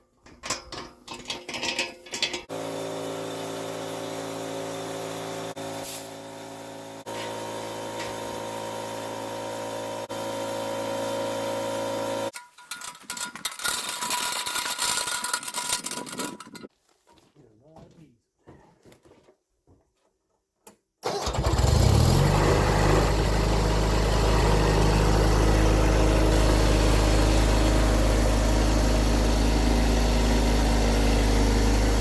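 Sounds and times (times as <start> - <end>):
clattering and handling noises: 0.0 - 2.5, 12.3 - 17.4
lawn tractor engine running: 1.5 - 16.4, 21.0 - 32.0.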